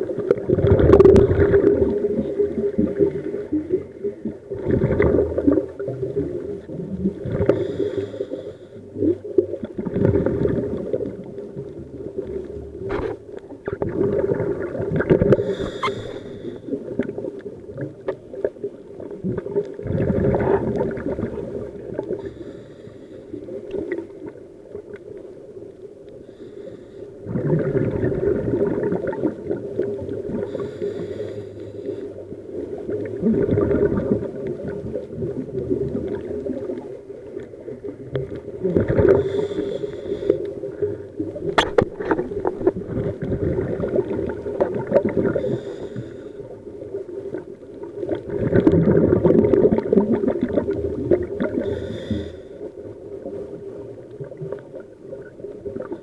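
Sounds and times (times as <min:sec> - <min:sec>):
diver exhaling bubbles: 0:00.0 - 0:08.4, 0:09.0 - 0:11.6, 0:12.8 - 0:22.6, 0:27.2 - 0:31.3, 0:32.8 - 0:36.8, 0:37.7 - 0:46.2, 0:47.3 - 0:52.4.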